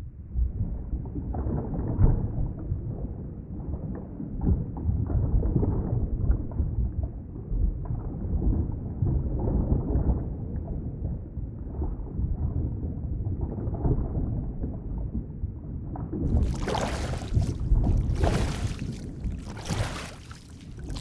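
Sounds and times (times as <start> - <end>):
muffled rumble of moving water: 16.3 - 21.0.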